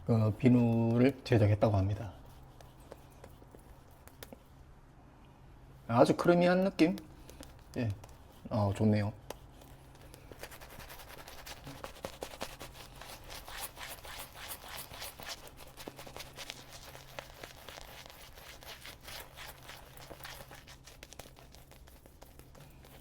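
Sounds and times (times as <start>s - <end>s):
shaving brush scratching lather: 10.2s - 23.0s.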